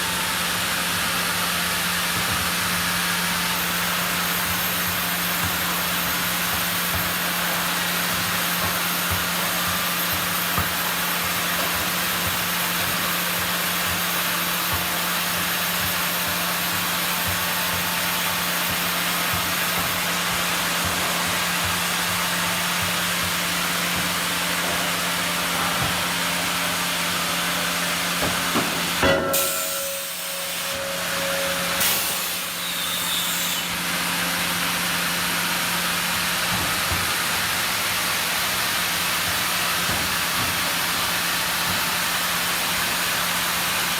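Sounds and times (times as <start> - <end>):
sawmill machinery running: 0.0 - 43.9.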